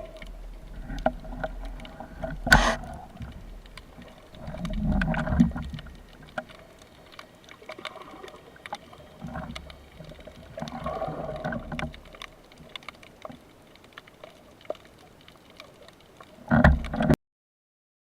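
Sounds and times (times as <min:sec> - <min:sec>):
underwater clicks and crackles: 0:00.0 - 0:17.2
low underwater rumbling swells: 0:07.8 - 0:12.5.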